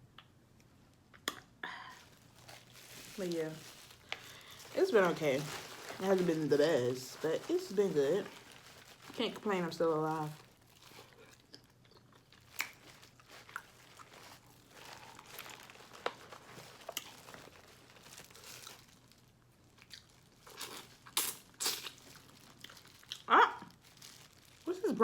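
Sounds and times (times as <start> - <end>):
crinkling: 0.6 - 25.0
chewing: 10.7 - 17.6
crab shells cracking: 10.9 - 17.6.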